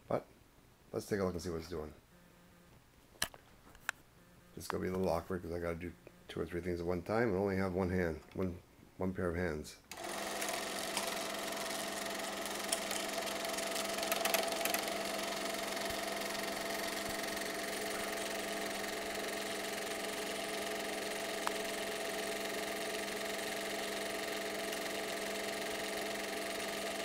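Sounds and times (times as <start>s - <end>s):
film projector running: 9.9s - 27.0s.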